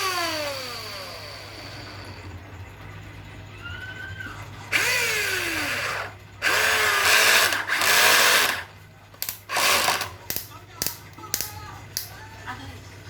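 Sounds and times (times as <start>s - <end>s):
electric drill whirring: 0.0s - 2.4s, 4.7s - 8.7s, 9.5s - 10.2s.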